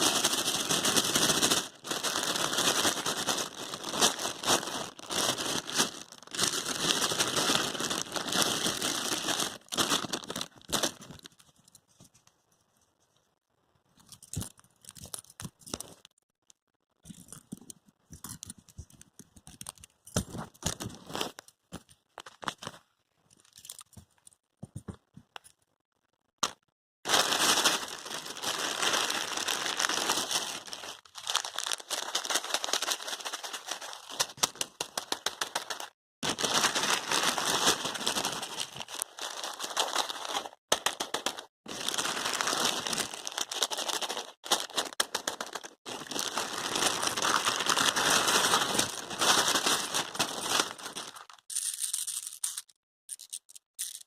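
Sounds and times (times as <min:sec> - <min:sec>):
wrapping paper crumpling and tearing: 0:00.0 - 0:11.5, 0:27.1 - 0:54.0.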